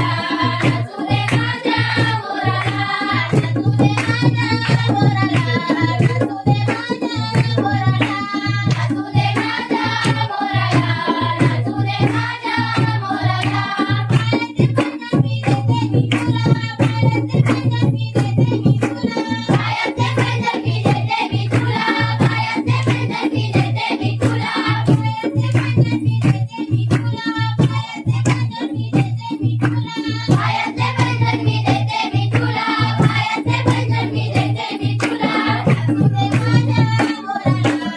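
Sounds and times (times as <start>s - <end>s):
person singing with vibrato: 0.0s - 3.6s
rhythmic drum beat: 0.0s - 37.9s.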